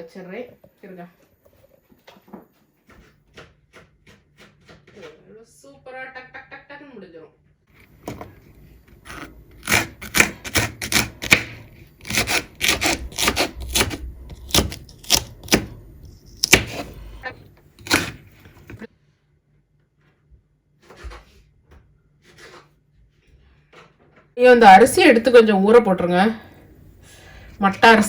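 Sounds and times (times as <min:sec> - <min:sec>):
knife chopping on cutting board: 0:09.0 - 0:17.0, 0:17.8 - 0:18.8.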